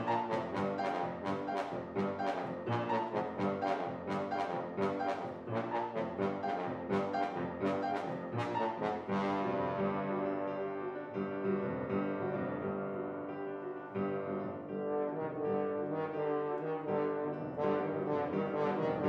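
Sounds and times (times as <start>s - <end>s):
french horn playing: 0.0s - 10.4s, 14.9s - 19.0s
piano accompaniment: 0.0s - 19.0s.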